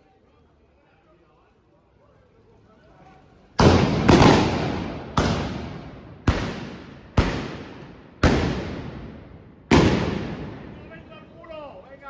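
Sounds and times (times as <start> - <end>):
blunderbuss shots echoing: 3.6 - 11.4.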